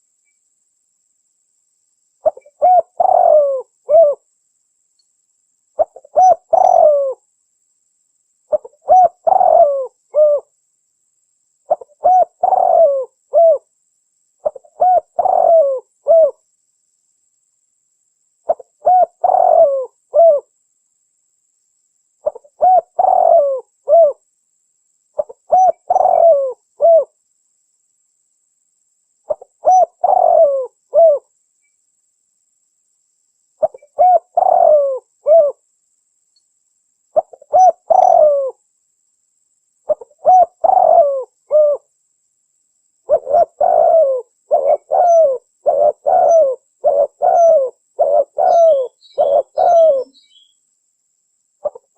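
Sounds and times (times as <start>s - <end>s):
dove cooing: 2.2s - 4.2s, 5.8s - 7.2s, 8.5s - 10.5s, 11.7s - 13.7s, 14.4s - 16.4s, 18.5s - 20.5s, 22.2s - 24.2s, 25.2s - 27.2s, 29.3s - 31.3s, 33.6s - 35.6s, 37.2s - 38.6s, 39.9s - 41.9s, 43.1s - 50.5s, 51.6s - 51.9s.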